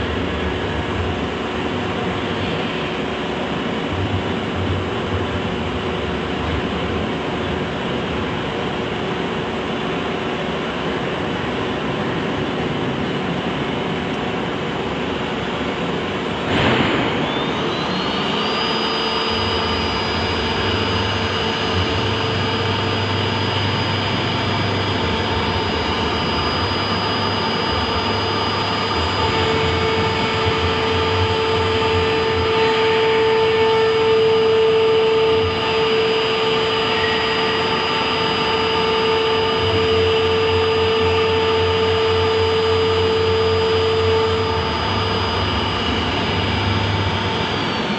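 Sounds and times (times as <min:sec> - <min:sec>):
low hum: 0:00.0 - 0:47.9
spindle whine: 0:00.0 - 0:47.9
wood router running: 0:17.6 - 0:47.9.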